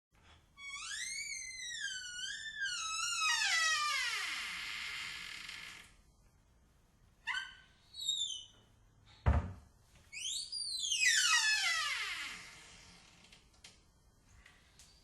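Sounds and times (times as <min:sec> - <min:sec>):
door hinges creaking: 0:00.2 - 0:06.0, 0:10.1 - 0:13.7.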